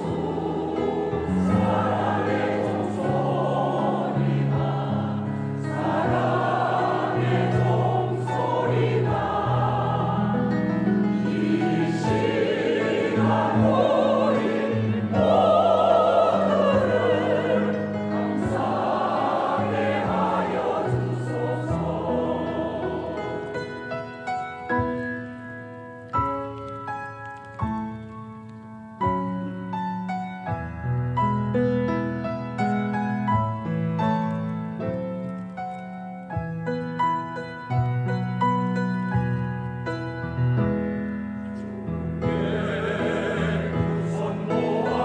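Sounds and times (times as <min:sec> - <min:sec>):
church choir singing a hymn: 0:00.0 - 0:24.6, 0:41.5 - 0:45.0.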